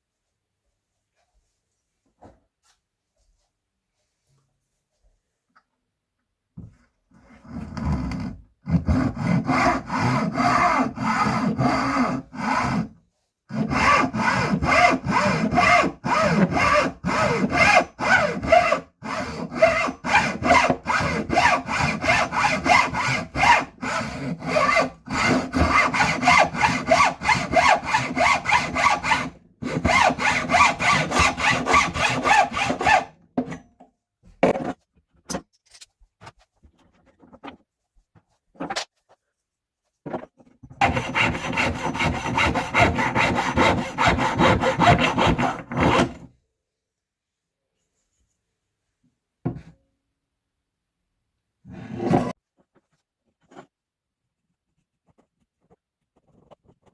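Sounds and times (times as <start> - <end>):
hand saw cutting wood: 7.6 - 33.2, 40.8 - 46.3.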